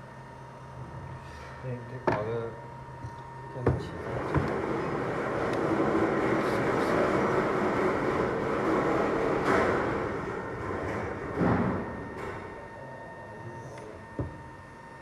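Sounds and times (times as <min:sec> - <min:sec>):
knock: 0:14.2 - 0:14.4.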